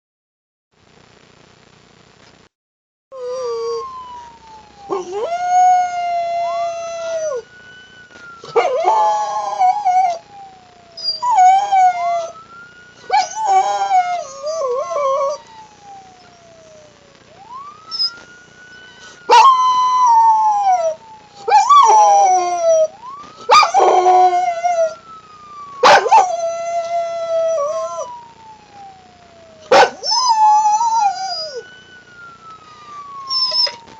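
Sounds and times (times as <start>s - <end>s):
dog howling: 3.2s - 7.5s, 8.4s - 12.4s, 19.3s - 22.9s, 23.5s - 25.0s, 25.8s - 28.2s, 28.9s - 31.7s, 32.8s - 33.9s
wailing ambulance siren: 3.2s - 33.9s.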